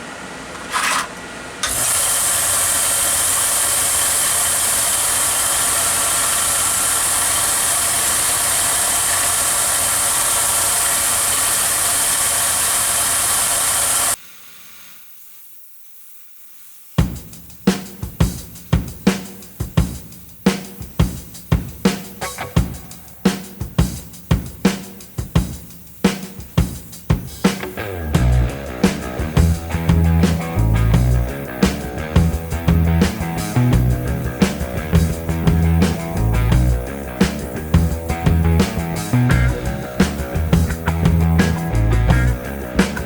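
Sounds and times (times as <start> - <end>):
belt sander running: 0.0 - 14.2, 27.6 - 43.0
music with drum beat: 17.0 - 43.0.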